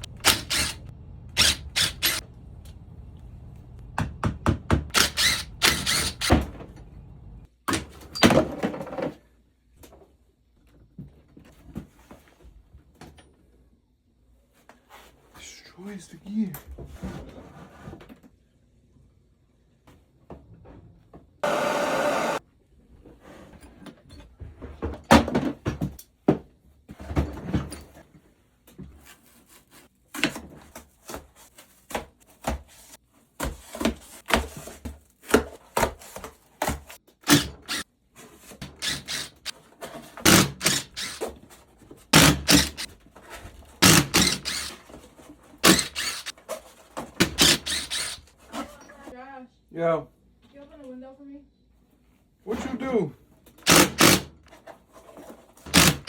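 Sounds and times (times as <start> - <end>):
power tool whirring: 0.0 - 2.3, 4.9 - 6.4, 21.4 - 22.4, 38.6 - 39.5, 40.3 - 41.3, 42.2 - 42.9, 43.8 - 44.8, 45.6 - 46.3, 47.3 - 48.3, 53.6 - 54.3, 55.7 - 56.0.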